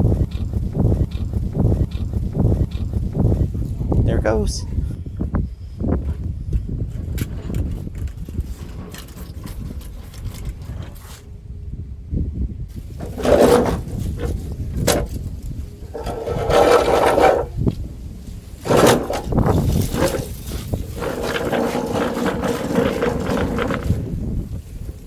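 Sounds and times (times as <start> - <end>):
metal mower deck rumbling: 12.7 - 24.6
metal scraping on floor: 13.0 - 15.1, 15.8 - 17.7, 18.6 - 24.1.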